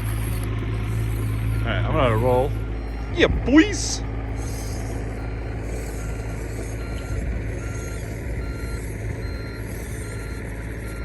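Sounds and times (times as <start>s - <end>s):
low rumble: 0.0s - 11.0s
small electric motor whirring: 0.0s - 11.0s.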